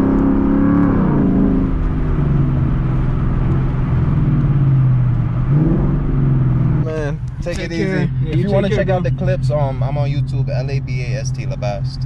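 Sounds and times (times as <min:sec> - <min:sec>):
car engine through loud exhaust: 0:00.0 - 0:12.0.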